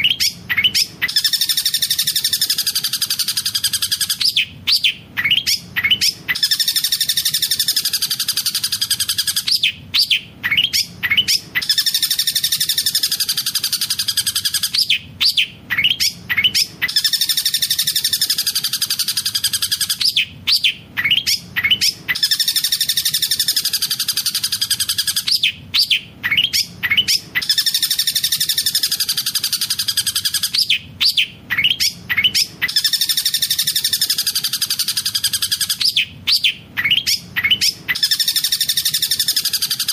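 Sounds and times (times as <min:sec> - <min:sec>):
shrike singing a rolling song: 0:00.0 - 0:39.9.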